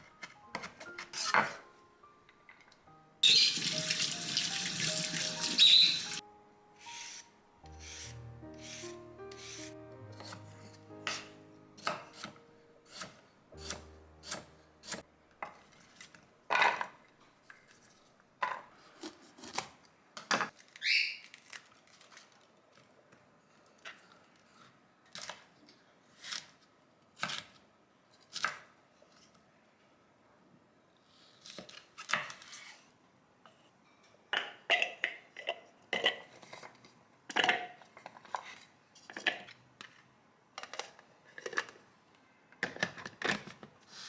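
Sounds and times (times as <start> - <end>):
faint background music: 0.0 - 16.7.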